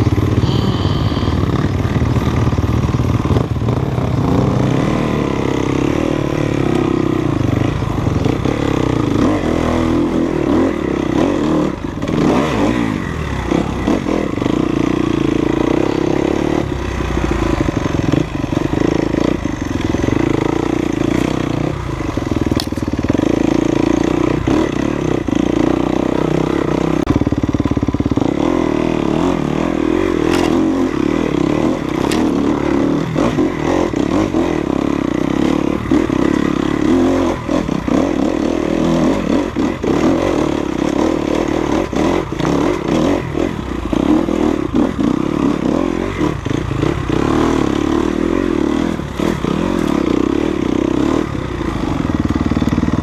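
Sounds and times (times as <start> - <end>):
dirt bike engine running: 0.0 - 53.0
bike knocking and rattling: 17.5 - 23.4, 30.2 - 30.9, 31.5 - 32.8, 39.5 - 44.1, 49.1 - 50.2, 51.8 - 53.0.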